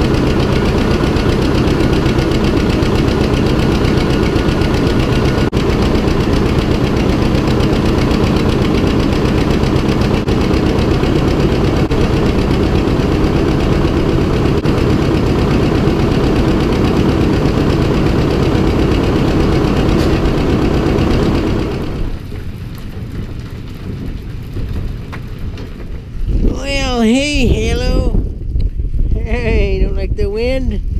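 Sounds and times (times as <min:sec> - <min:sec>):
tractor engine running: 0:00.0 - 0:29.0
wind noise: 0:18.1 - 0:30.9.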